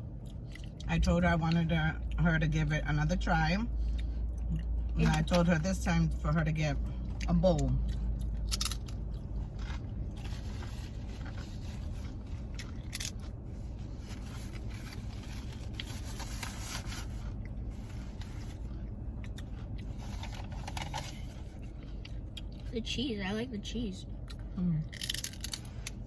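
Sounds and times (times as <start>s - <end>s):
chewing: 7.0s - 13.9s, 17.3s - 20.0s
crinkly rustling: 9.5s - 18.8s, 19.8s - 21.7s.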